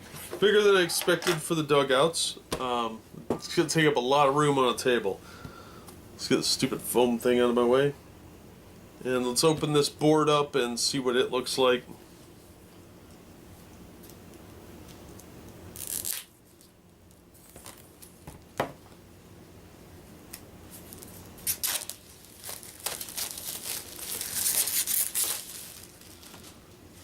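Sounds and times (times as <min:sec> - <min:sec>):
packaging tearing and crinkling: 0:15.8 - 0:16.7, 0:20.8 - 0:26.5.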